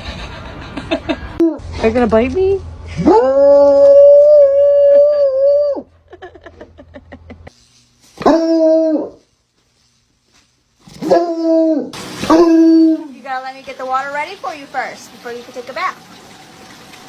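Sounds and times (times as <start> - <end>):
dog howling: 3.0 - 5.9, 8.2 - 9.2, 11.0 - 13.1.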